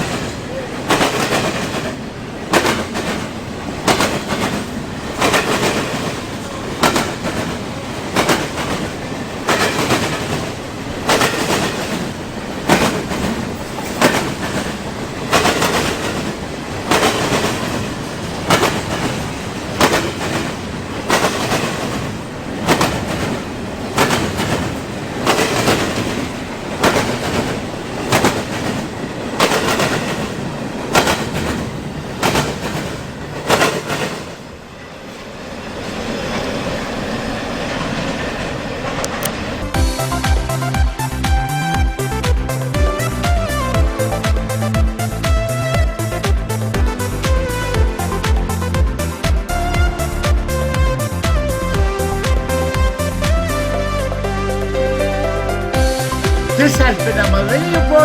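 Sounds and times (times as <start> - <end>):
train wheels clacking over rail joints: 0.0 - 34.5
freight train rumble: 0.0 - 58.0.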